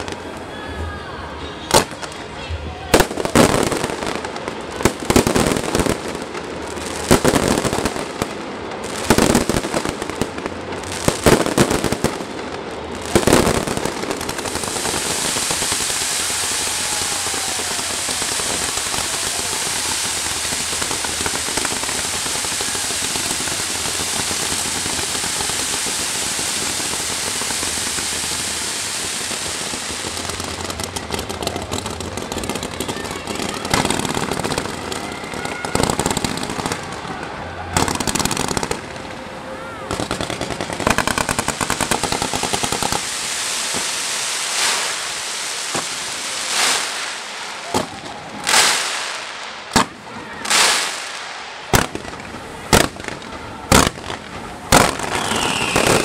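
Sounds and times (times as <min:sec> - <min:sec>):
fireworks crackling: 0:00.0 - 0:56.0
firework shells bursting: 0:40.0 - 0:49.9.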